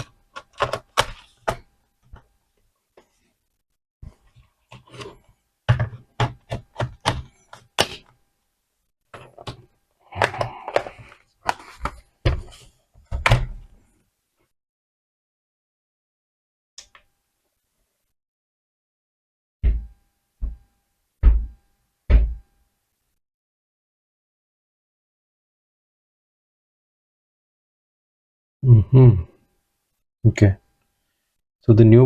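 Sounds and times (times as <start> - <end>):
laptop parts knocking and clicking: 0.0 - 2.3, 5.7 - 8.1.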